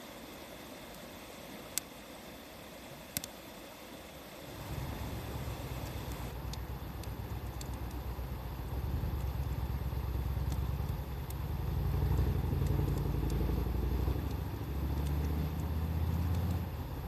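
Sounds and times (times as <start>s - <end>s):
wood fire crackling: 3.0s - 3.6s, 4.3s - 17.0s
low engine-like rumble: 4.5s - 17.0s.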